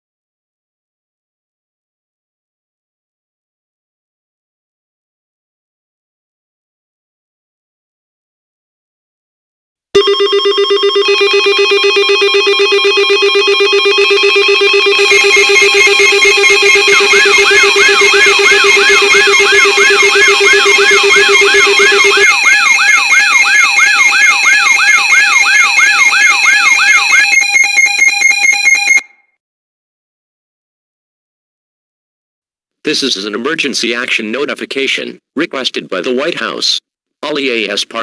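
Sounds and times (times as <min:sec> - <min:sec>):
pulsing electronic alert tones: 0:10.0 - 0:29.1
warbling siren: 0:10.0 - 0:29.2.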